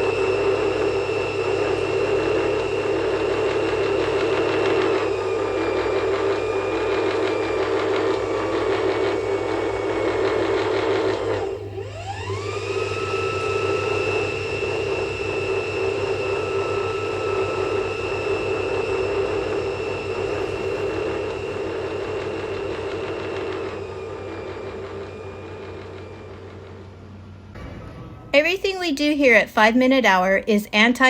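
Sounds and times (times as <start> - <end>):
machine droning with whine: 0.0 - 31.0
tone sweeping upward: 26.9 - 29.8.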